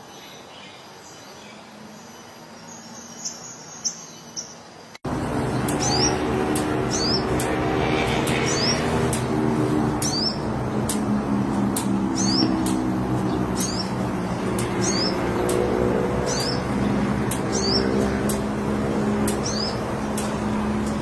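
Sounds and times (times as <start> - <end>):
bird chirping: 0.0 - 18.4, 19.2 - 21.0
low hum: 5.1 - 21.0
sharp clicks: 5.2 - 7.6, 8.2 - 21.0.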